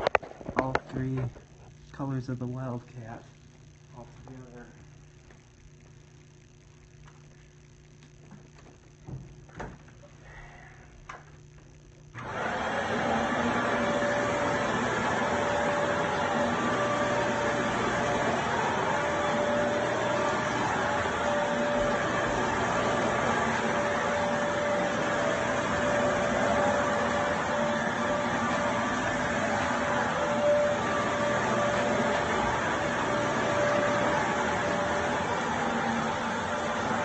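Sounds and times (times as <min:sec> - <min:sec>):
vacuum cleaner running: 0:12.1 - 0:37.0.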